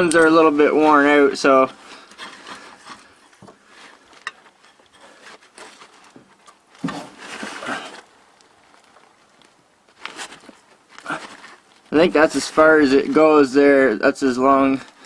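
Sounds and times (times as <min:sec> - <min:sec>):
scraping rustle: 0:00.0 - 0:15.0
light clicks and knocks of hand work: 0:02.0 - 0:11.6.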